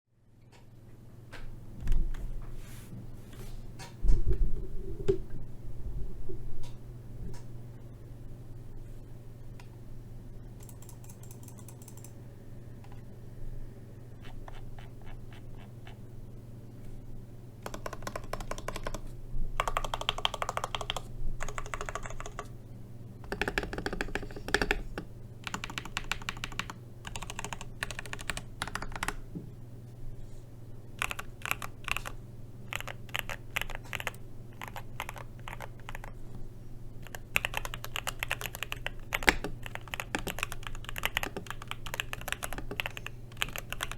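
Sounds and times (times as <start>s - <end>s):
mechanical keyboard typing: 10.6s - 12.2s, 14.2s - 16.0s, 17.6s - 22.5s, 23.2s - 29.2s, 31.0s - 36.2s, 37.0s - 43.9s.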